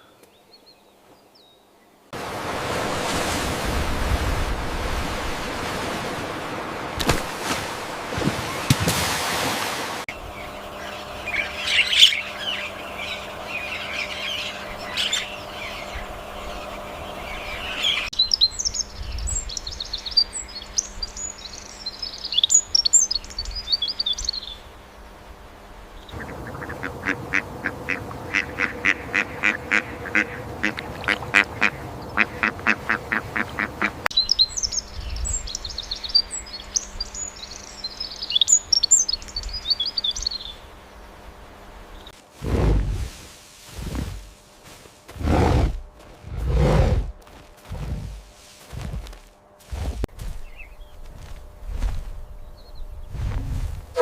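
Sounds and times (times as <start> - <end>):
high bird chirping: 10.2 - 24.7, 34.1 - 40.7
rapid quacking calls: 26.2 - 34.1.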